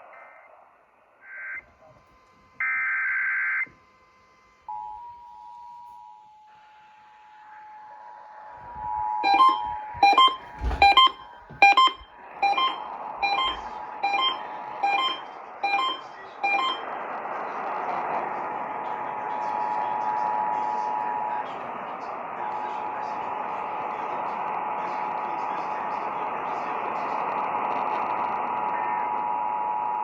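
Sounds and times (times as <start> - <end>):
steady two-tone attention signal: 8.7 - 16.8
sharp beeps: 8.8 - 16.8.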